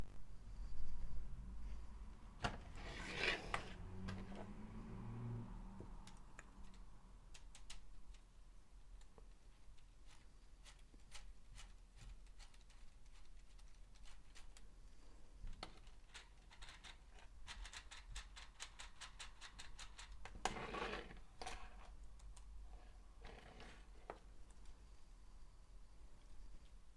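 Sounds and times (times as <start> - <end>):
plastic pieces clicking and rattling: 6.4 - 8.3, 15.6 - 20.5.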